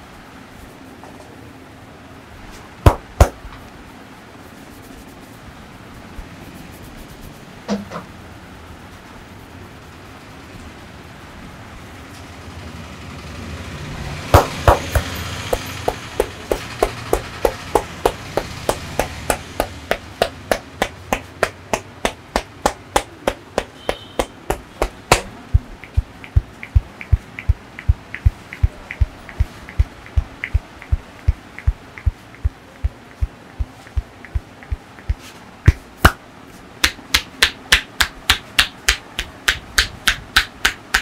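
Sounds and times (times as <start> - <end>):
hand slaps on skin: 2.9 - 3.4, 14.4 - 15.2, 20.5 - 25.3, 36.8 - 41.0
soft deep thumps: 14.4 - 35.8.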